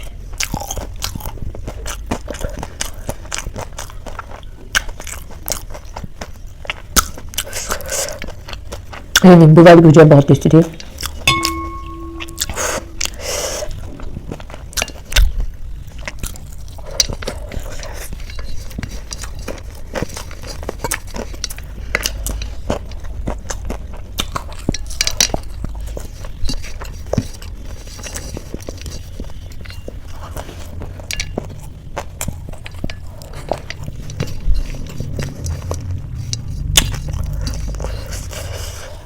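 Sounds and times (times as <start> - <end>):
crunchy snack being chewed: 0.0 - 9.3, 13.1 - 39.0
steady low hum: 10.7 - 13.3, 30.6 - 39.0.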